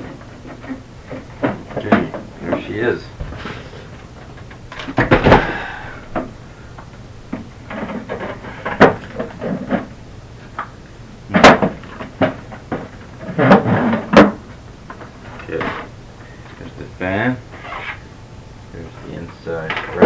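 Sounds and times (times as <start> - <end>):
knocks and clunks: 0.0 - 6.4.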